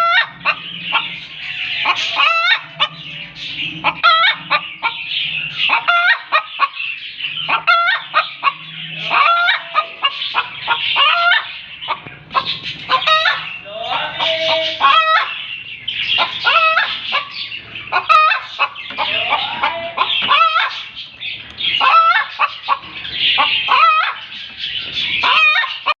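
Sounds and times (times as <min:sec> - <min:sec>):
hen cackling: 0:00.0 - 0:26.0.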